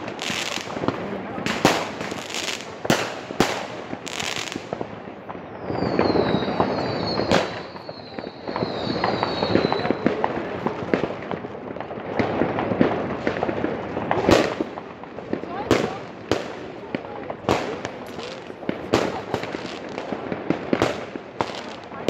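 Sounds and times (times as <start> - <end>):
firecrackers crackling: 0.0 - 22.0
firework bangs: 0.0 - 22.0
whistling rockets: 5.4 - 11.0.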